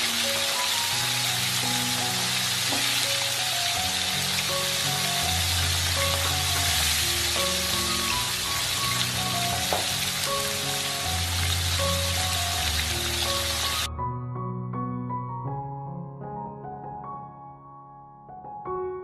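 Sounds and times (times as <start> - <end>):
fish sizzling in hot oil: 0.0 - 13.9
slow background music: 0.0 - 19.0.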